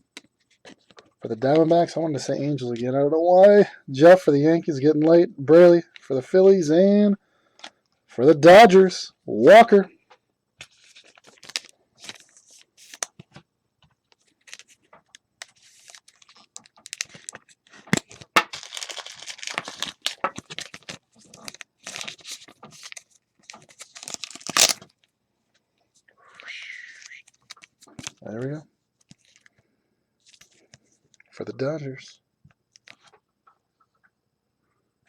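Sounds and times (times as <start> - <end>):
cards shuffled in hand: 10.6 - 13.4, 14.1 - 24.8
wrapper being torn and crinkled: 10.8 - 13.1, 15.5 - 24.9.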